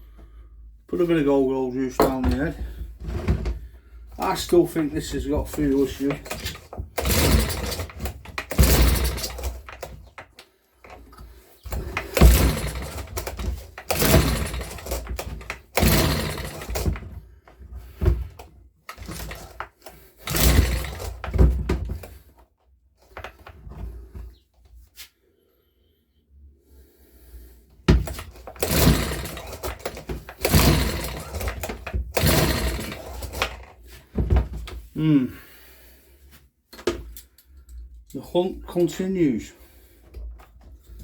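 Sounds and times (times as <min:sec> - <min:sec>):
leaf blower recoil starter pulls: 0:00.9 - 0:22.3, 0:27.9 - 0:34.9.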